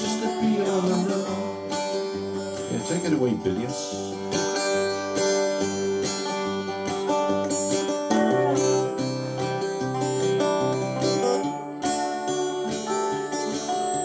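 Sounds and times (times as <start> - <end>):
acoustic guitar strumming: 0.0 - 14.0
melody line: 7.5 - 11.5.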